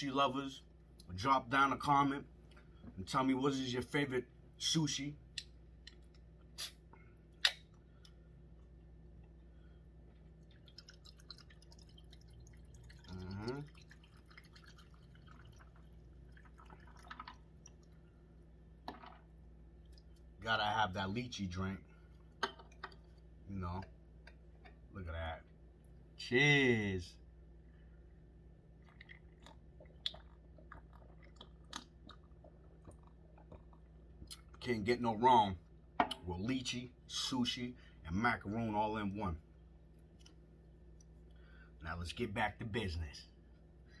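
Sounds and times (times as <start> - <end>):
wet chewing clicks and smacks: 5.3 - 6.6, 28.8 - 34.6.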